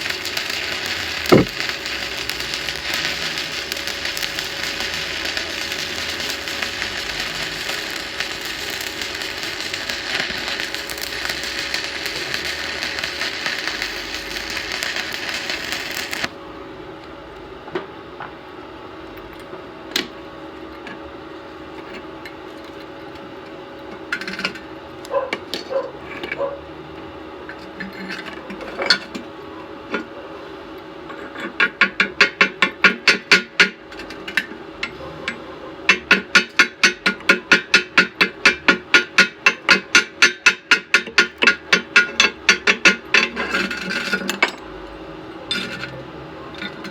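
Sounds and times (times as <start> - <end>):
welding arc crackling and hissing: 0.0 - 16.4.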